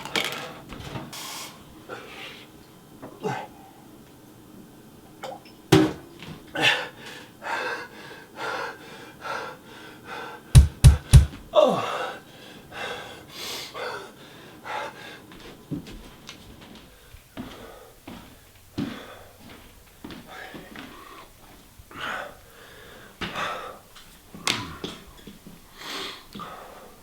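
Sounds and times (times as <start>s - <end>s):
person breathing hard: 1.8s - 2.6s, 6.5s - 15.4s, 17.0s - 25.0s, 25.7s - 27.0s
heavy thuds: 10.6s - 11.5s.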